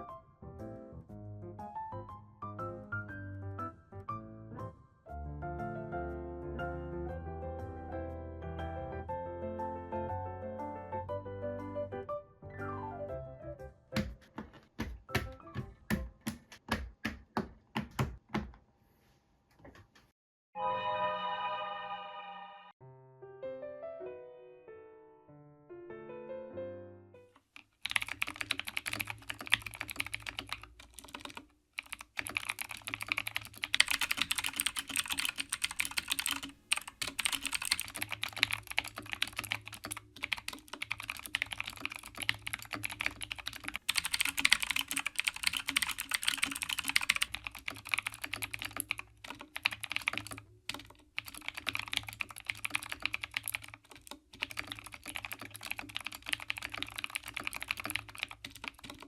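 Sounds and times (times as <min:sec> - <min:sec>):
fast mechanical keyboard typing: 0:27.6 - 0:59.0.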